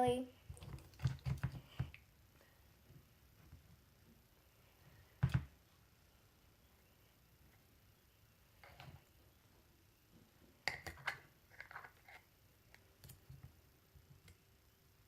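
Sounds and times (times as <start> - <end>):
objects being handled: 10.6 - 13.6.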